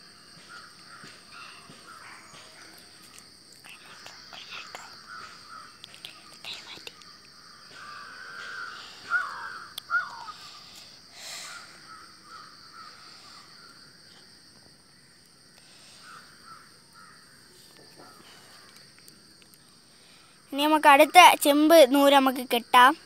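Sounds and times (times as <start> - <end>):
steady high hiss: 2.8 - 23.0
bird calling: 4.6 - 10.8.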